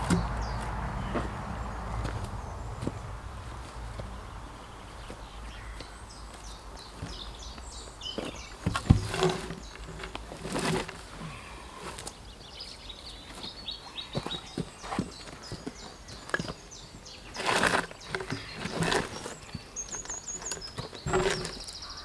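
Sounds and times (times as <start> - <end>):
knocks and thuds of wood: 0.0 - 4.1, 6.9 - 12.1, 17.4 - 22.0.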